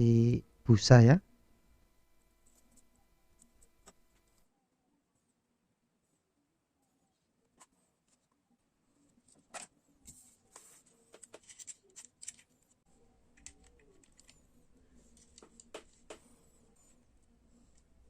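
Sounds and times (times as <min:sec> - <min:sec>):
small parts and tape rustling: 0:09.2 - 0:12.8.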